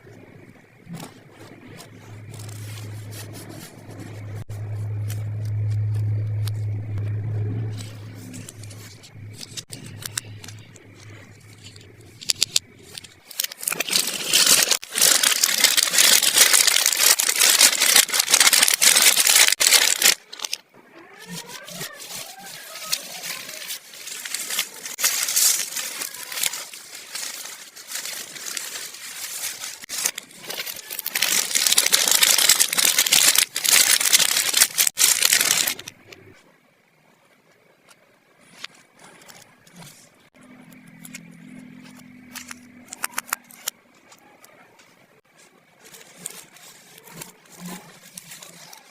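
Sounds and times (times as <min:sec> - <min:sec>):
low hum: 0:00.0 - 0:30.7
plastic packaging crinkling: 0:00.8 - 0:36.3, 0:45.3 - 0:48.9.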